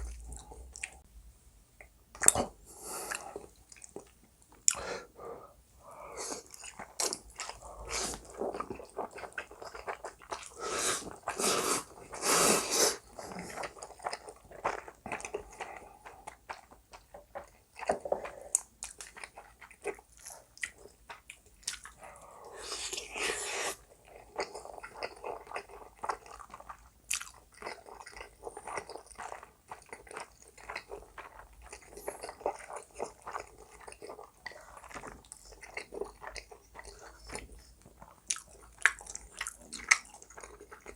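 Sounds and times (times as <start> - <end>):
chewing and biting: 6.4 - 12.2, 13.0 - 22.0, 23.8 - 40.9.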